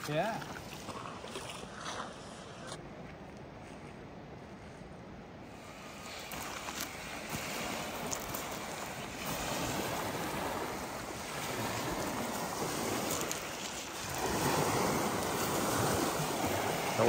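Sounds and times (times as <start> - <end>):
waves washing onto shore: 5.4 - 17.0.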